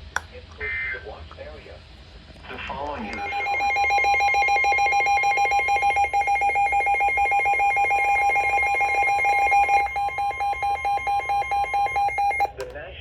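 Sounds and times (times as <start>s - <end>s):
harsh two-tone alert buzz: 3.0s - 12.5s.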